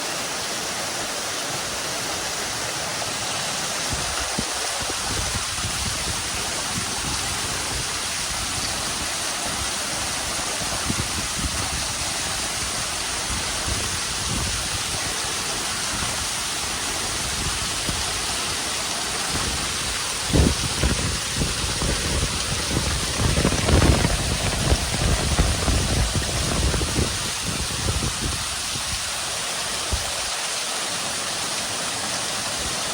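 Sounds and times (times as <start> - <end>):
waterfall pouring onto rocks: 0.0 - 32.9.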